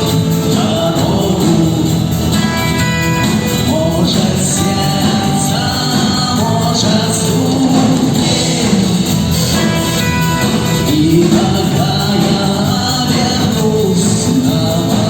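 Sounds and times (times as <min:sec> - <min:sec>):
person singing: 0:00.0 - 0:15.0
rock band playing: 0:00.0 - 0:15.0.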